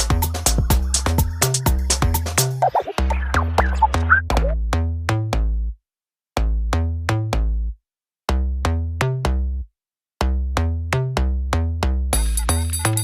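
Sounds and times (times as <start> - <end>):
electronic music with drum-machine beat: 0.0 - 4.6, 12.2 - 13.0.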